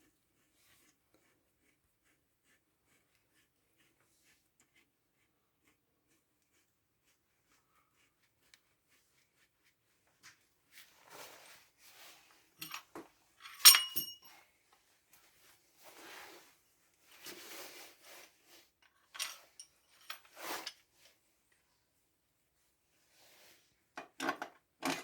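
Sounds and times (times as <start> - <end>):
light metal clinks: 12.6 - 14.4, 19.2 - 20.7
metal parts scraping: 19.2 - 20.7.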